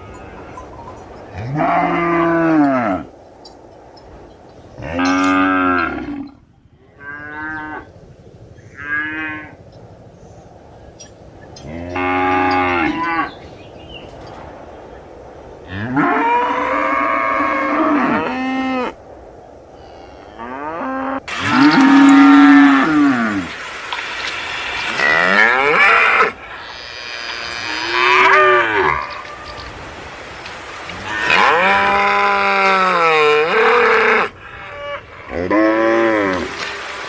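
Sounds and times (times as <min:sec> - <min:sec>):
cows mooing: 0:04.8 - 0:06.3, 0:11.6 - 0:13.4, 0:15.7 - 0:19.0, 0:19.8 - 0:23.5, 0:24.3 - 0:29.8, 0:30.8 - 0:36.7.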